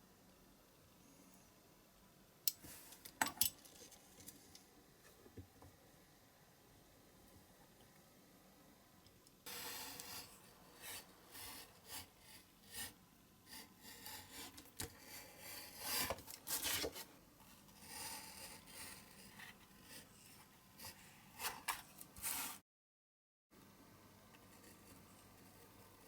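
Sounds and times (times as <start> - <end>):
hand scraping and rubbing: 20.8 - 22.6.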